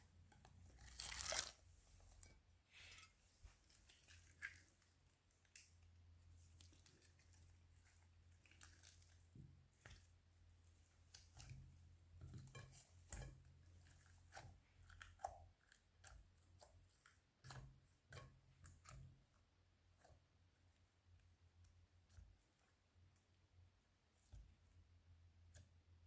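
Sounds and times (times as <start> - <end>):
slime crackling and popping: 0.7 - 1.6.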